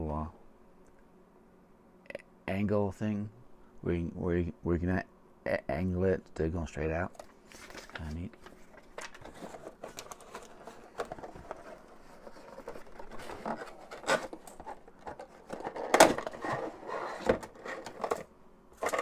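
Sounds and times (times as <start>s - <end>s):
clicks and knocks of handling: 7.2s - 19.0s
packaging rustling: 7.2s - 19.0s.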